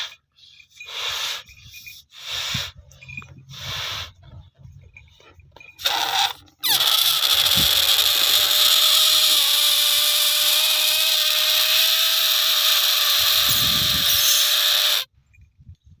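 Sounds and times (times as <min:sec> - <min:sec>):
balloon squealing as it deflates: 0:05.8 - 0:15.1.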